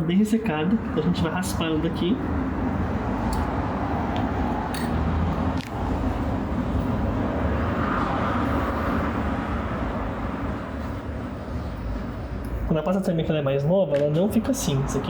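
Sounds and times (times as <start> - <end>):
low rumbling background noise: 0.0 - 15.0.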